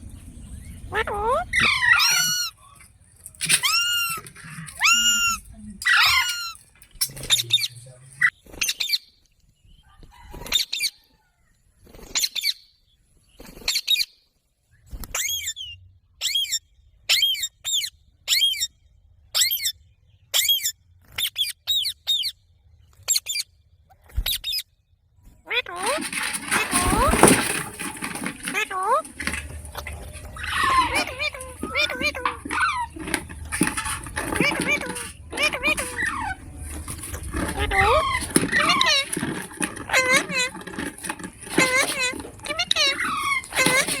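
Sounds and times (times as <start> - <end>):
parrot screeching: 0.9 - 2.6, 3.4 - 6.7, 29.6 - 39.2, 39.8 - 44.0.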